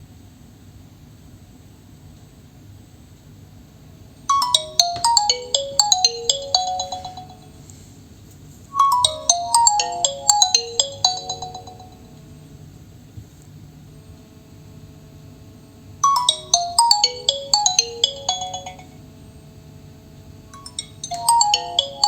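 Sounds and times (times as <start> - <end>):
phone ringtone melody: 4.3 - 7.6, 8.7 - 12.1, 16.0 - 19.0, 20.6 - 22.0.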